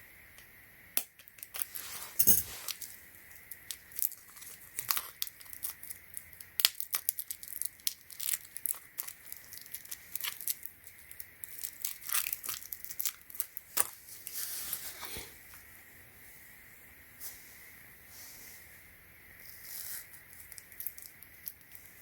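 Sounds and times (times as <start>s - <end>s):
packaging being torn and crinkled: 1.1s - 14.4s, 20.4s - 21.8s.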